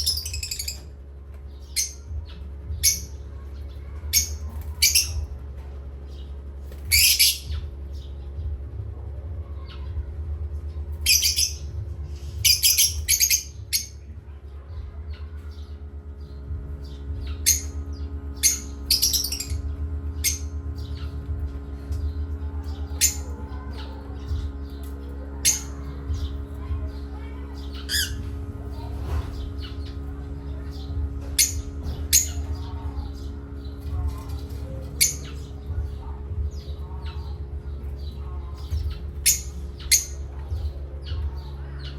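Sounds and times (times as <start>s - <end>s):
parrots squawking and chirping: 0.0s - 1.0s, 1.6s - 3.2s, 4.1s - 5.4s, 6.7s - 7.7s, 11.0s - 14.1s, 16.8s - 41.9s
steady low hum: 0.0s - 41.9s.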